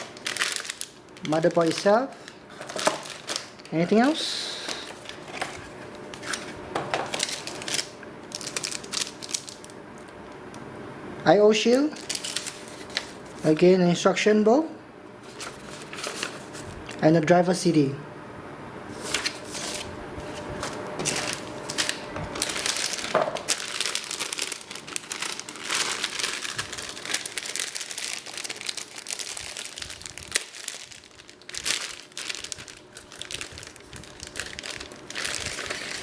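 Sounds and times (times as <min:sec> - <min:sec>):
plastic packaging crinkling: 0:00.0 - 0:09.8, 0:11.6 - 0:13.8, 0:15.2 - 0:17.0, 0:19.0 - 0:36.0.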